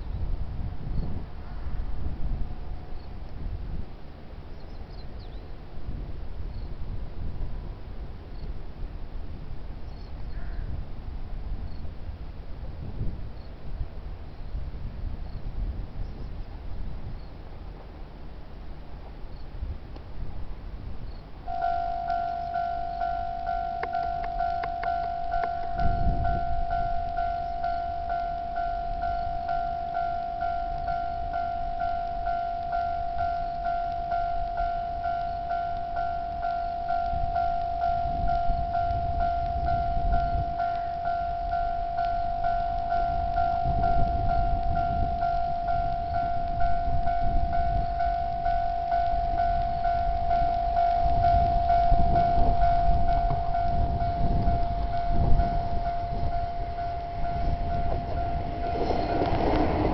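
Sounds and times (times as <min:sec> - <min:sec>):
level crossing alarm bell: 0:21.5 - 0:59.9.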